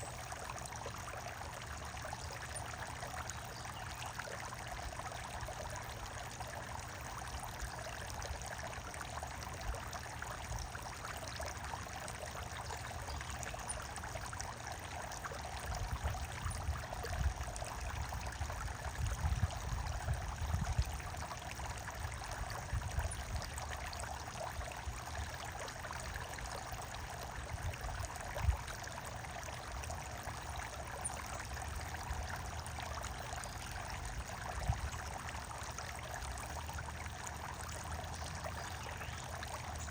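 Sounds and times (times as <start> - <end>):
water trickling and splashing: 0.0 - 39.9.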